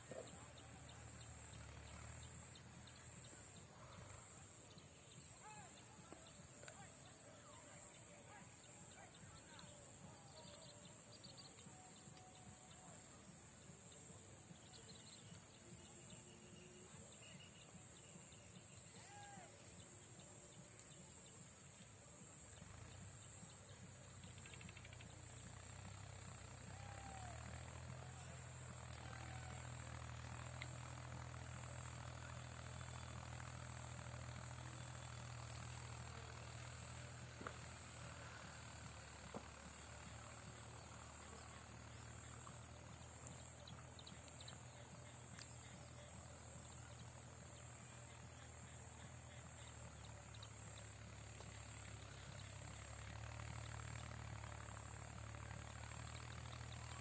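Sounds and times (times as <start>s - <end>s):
low engine hum: 0.0s - 7.6s, 20.2s - 57.0s
insect chorus chirping: 22.4s - 57.0s
bird chirps: 22.6s - 26.4s.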